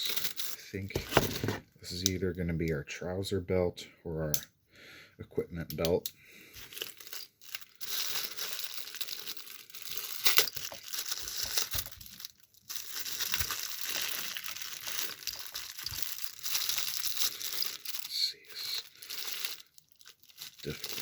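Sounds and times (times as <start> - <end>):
packaging crinkling and rustling: 0.3 - 1.7, 6.6 - 21.0
packaging sharp crackle: 6.8 - 21.0.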